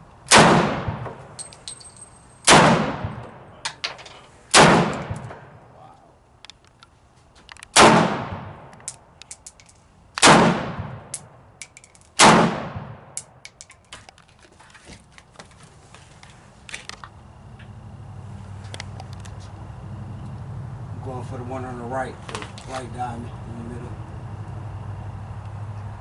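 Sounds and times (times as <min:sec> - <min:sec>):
gunshots with reverberation: 0:00.3 - 0:01.4, 0:02.4 - 0:03.6, 0:04.5 - 0:05.7, 0:07.7 - 0:09.6, 0:10.2 - 0:13.5
low steady hum: 0:07.9 - 0:26.0
sharp clicks: 0:08.6 - 0:10.3, 0:11.0 - 0:12.2, 0:13.1 - 0:14.3.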